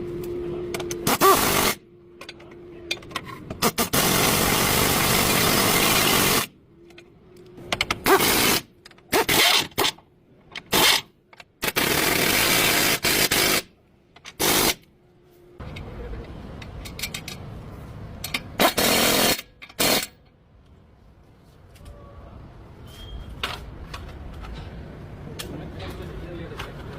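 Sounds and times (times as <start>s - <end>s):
power tool bursts: 1.0s - 1.8s, 18.6s - 20.1s.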